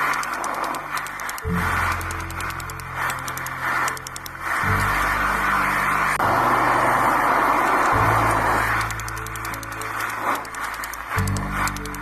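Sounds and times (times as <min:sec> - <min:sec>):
light ticking percussion: 0:00.0 - 0:04.8, 0:07.8 - 0:12.0
background music with low chords: 0:00.0 - 0:12.0.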